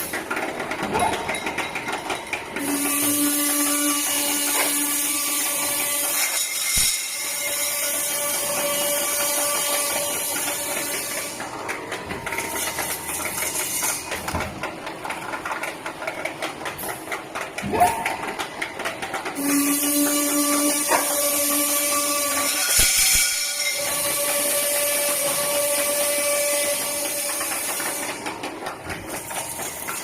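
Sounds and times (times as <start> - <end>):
clattering and knocks: 0.0 - 2.7.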